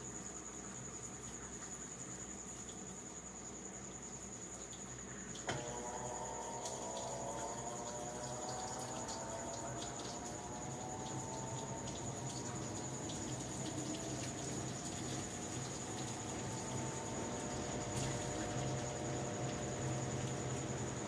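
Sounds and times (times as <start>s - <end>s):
water rushing: 5.7s - 21.0s.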